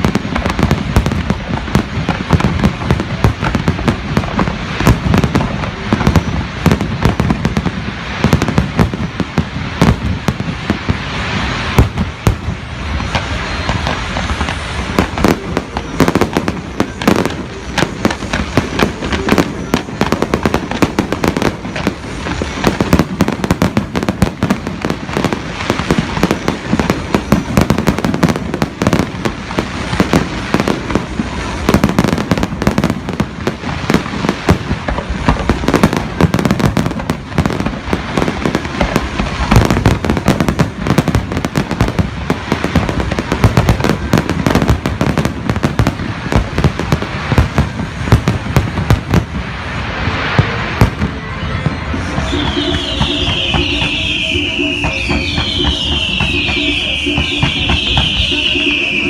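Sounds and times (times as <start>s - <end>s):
fireworks bangs and crackling: 0.0s - 59.0s.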